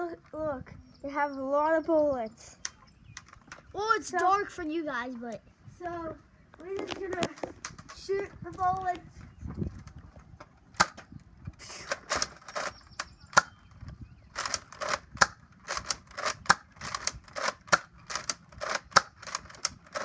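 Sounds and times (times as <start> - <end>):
toy dart blaster shots popping: 14.4 - 20.0.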